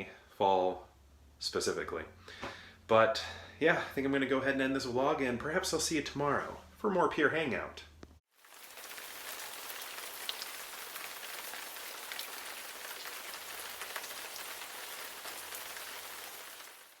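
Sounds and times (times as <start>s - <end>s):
steady rain falling: 8.3s - 17.0s
raindrops ticking: 8.4s - 17.0s.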